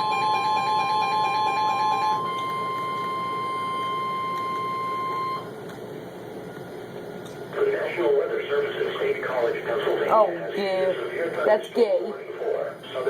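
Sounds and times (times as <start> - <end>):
pulsing beep: 0.0 - 5.5
steady alarm tone: 0.0 - 5.5
radio hiss: 7.5 - 13.0.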